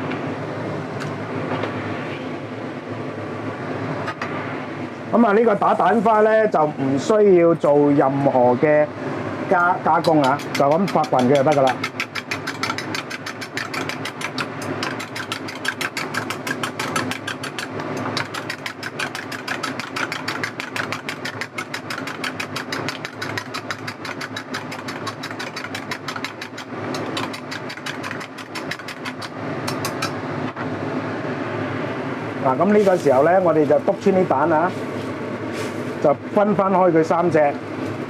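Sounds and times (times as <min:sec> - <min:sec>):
steady low hum: 0:00.0 - 0:38.0
utensil clicking against bowl: 0:10.0 - 0:30.2.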